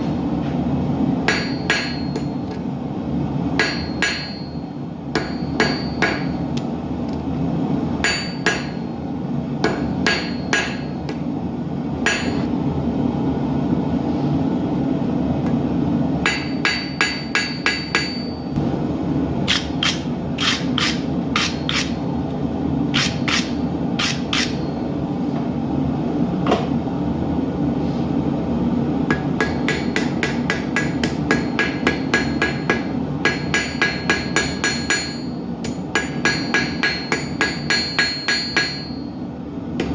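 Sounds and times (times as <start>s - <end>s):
gas forge roaring: 0.0s - 39.9s
hammer blows on an anvil: 1.3s - 2.5s, 3.6s - 6.4s, 8.0s - 8.9s, 9.6s - 11.2s, 12.0s - 12.5s, 16.2s - 18.5s, 29.1s - 39.1s.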